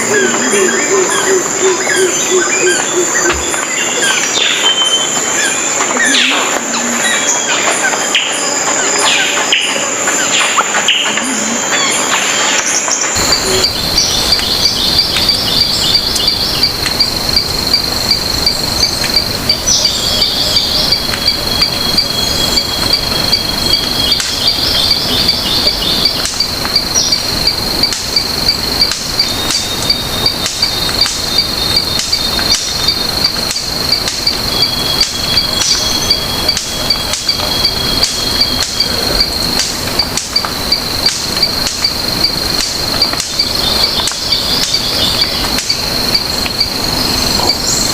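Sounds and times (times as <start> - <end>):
insects trilling: 0.0 - 47.9
sharp regular clicks: 13.2 - 47.9.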